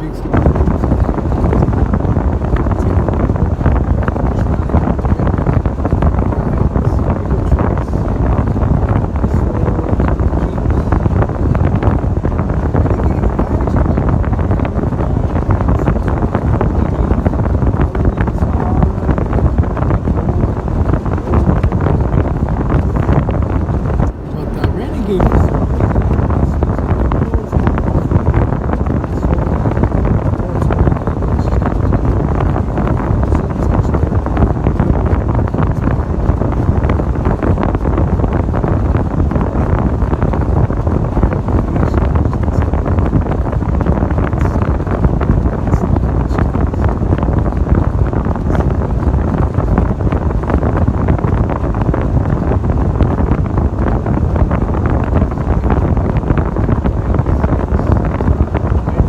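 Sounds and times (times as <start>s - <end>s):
vehicle engine rumbling: 0.0s - 59.0s
wind buffeting microphone: 0.0s - 59.0s.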